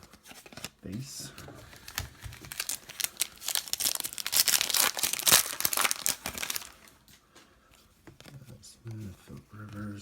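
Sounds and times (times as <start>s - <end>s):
foil wrapper crinkling and tearing: 1.8s - 6.9s.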